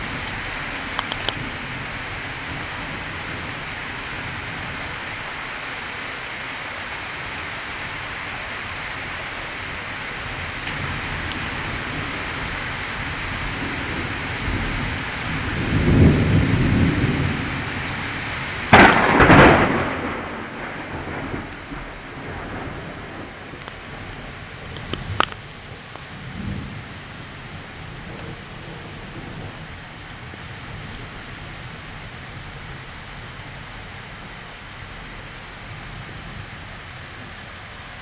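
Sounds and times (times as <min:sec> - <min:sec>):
heavy rain: 0:00.0 - 0:38.0
low thunder rumble: 0:10.3 - 0:33.6
sharp thunderclap: 0:15.4 - 0:17.8, 0:18.7 - 0:23.6.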